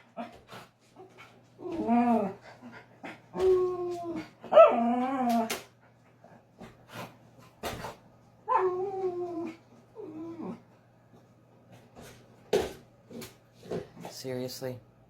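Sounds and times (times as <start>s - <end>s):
dog whining: 1.6s - 5.7s, 8.4s - 10.7s.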